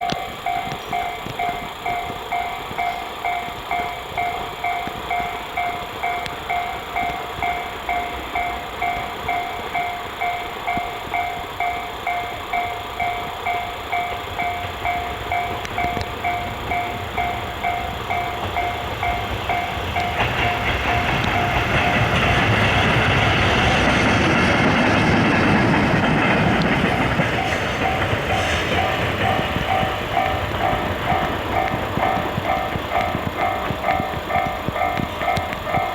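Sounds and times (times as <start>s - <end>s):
level crossing bell ringing: 0.0s - 22.3s, 27.4s - 35.9s
electric locomotive passing: 0.0s - 35.9s.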